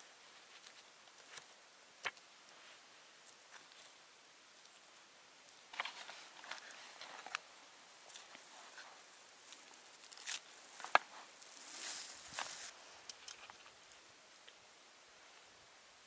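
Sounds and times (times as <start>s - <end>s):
light rustles: 8.1s - 13.7s.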